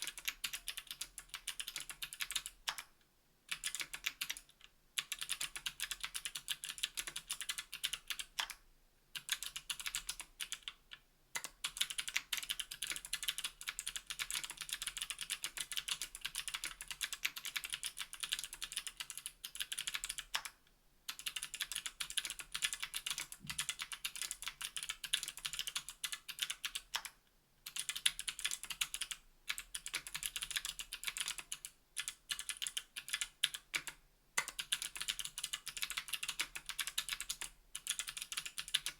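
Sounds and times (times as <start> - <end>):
mechanical keyboard typing clicks: 0.0 - 2.9, 3.5 - 8.6, 9.2 - 10.8, 11.4 - 38.9.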